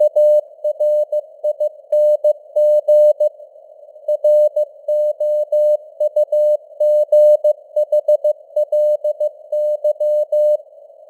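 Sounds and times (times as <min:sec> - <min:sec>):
faint radio hiss: 0:00.0 - 0:11.0
morse code tone: 0:04.1 - 0:10.6.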